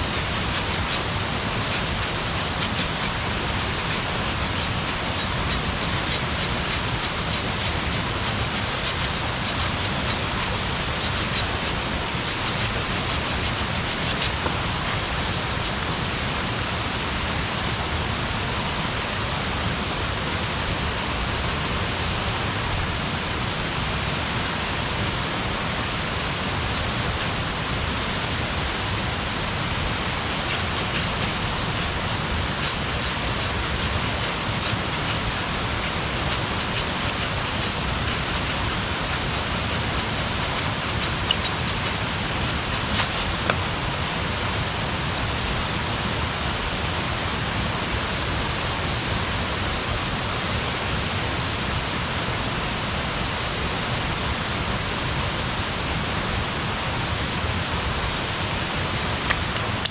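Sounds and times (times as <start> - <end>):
campfire hissing: 0.0 - 16.3, 25.8 - 45.7
fire crackles: 26.5 - 43.8.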